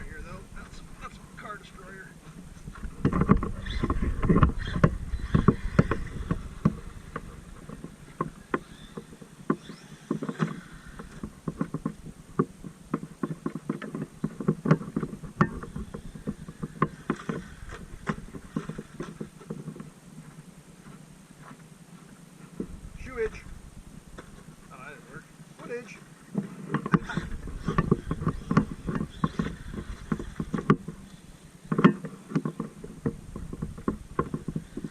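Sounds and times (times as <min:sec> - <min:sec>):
heavy rumble: 0:00.0 - 0:08.5
toy truck clattering over rough ground: 0:02.9 - 0:19.9, 0:26.3 - 0:34.9.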